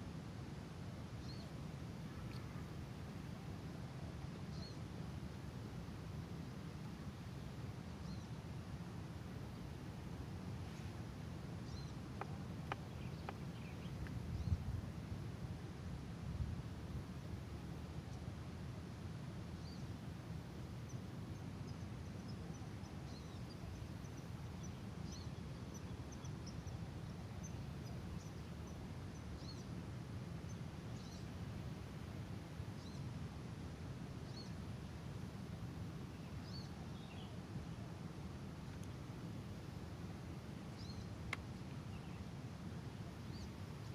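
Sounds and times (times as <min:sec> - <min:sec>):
outdoor background noise: 0:00.0 - 0:43.9
small birds chirping: 0:11.7 - 0:14.6, 0:40.8 - 0:42.2.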